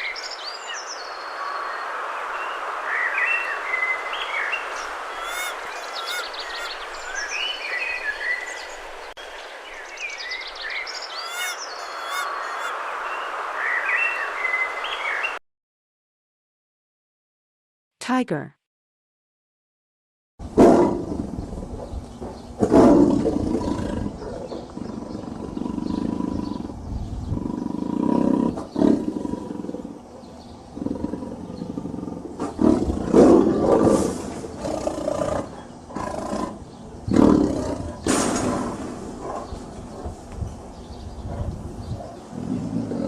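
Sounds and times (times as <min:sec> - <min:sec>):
tiger roaring: 0:20.4 - 0:21.8, 0:22.6 - 0:40.1, 0:42.3 - 0:43.0.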